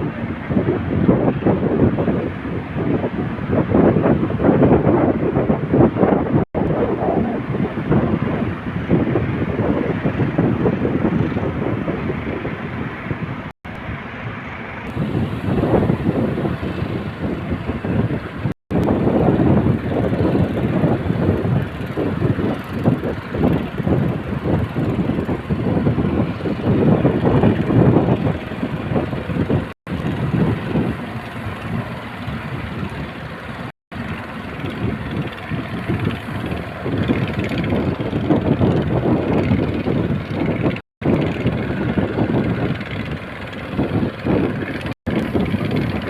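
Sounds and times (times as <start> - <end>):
boat engine rumbling: 0.0 - 46.0
heavy waves: 0.0 - 46.0
wind on microphone: 0.0 - 46.0.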